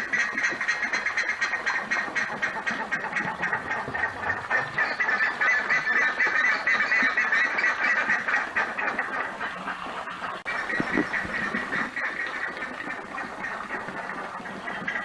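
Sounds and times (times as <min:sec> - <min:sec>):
ibis calling: 0:00.0 - 0:15.0.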